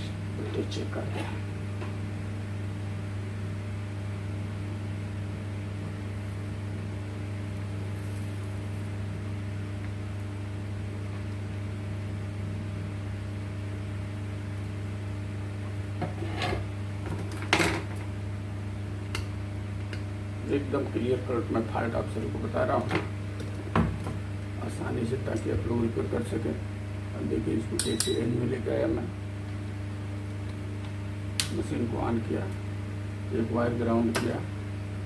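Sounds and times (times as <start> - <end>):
electrical mains hum: 0.0 - 35.0
scrape on bench: 16.0 - 16.7.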